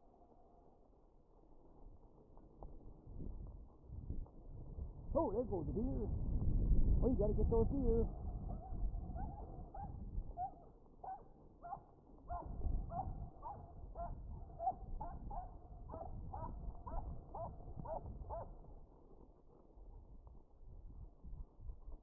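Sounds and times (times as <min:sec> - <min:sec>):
low rumble: 0:00.0 - 0:19.0
dog yipping: 0:08.6 - 0:18.5.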